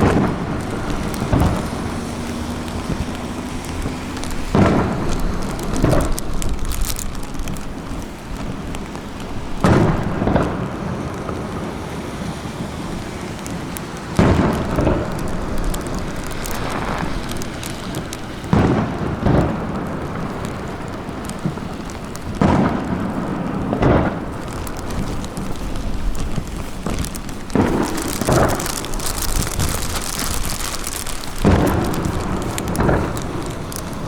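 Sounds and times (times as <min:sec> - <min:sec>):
fireworks booming: 0:00.0 - 0:11.7, 0:13.0 - 0:34.0
continuous hiss: 0:12.8 - 0:34.0.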